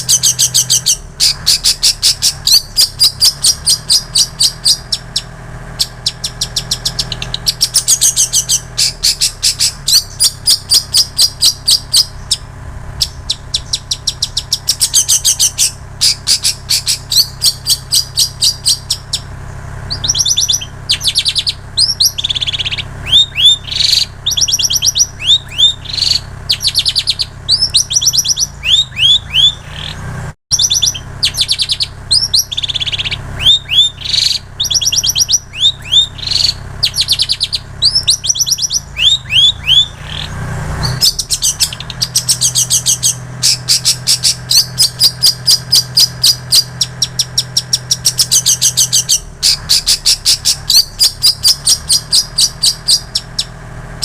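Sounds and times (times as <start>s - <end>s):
bird chattering trills: 0.0s - 53.6s
bird whistled notes: 0.0s - 53.6s.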